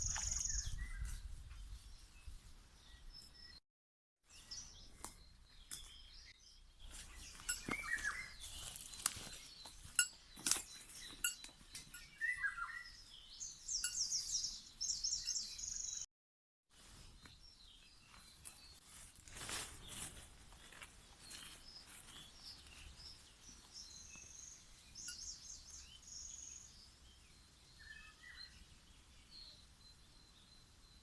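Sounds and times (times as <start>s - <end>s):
songbirds chirping: 0.0s - 3.6s, 4.2s - 16.1s, 16.7s - 31.0s.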